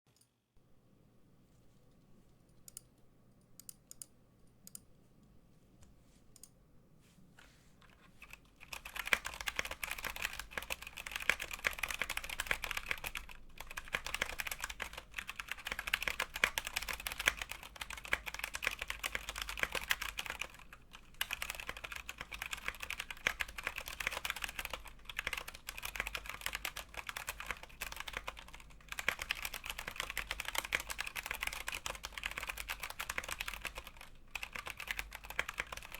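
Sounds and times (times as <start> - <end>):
mechanical keyboard typing: 7.9 - 35.9.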